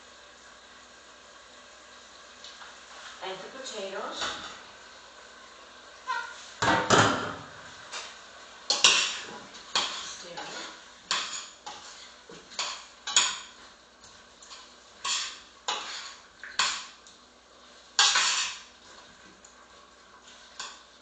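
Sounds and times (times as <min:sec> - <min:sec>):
utensil scraping a pan: 0:08.7 - 0:13.6, 0:14.4 - 0:16.9, 0:18.0 - 0:19.1.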